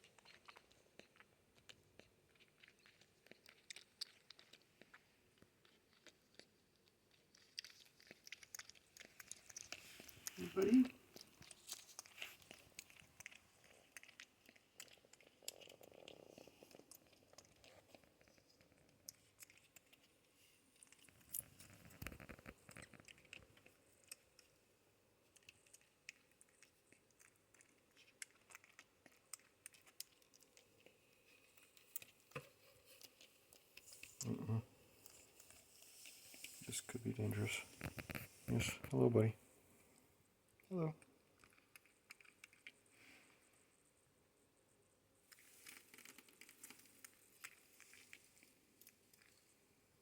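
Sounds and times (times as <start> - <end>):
soft rustling: 9.0 - 13.9, 31.2 - 40.0.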